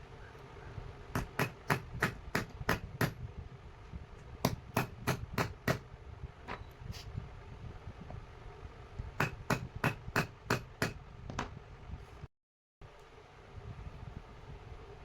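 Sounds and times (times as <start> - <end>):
hammer tapping: 1.2 - 3.2, 4.5 - 5.8, 9.2 - 11.0.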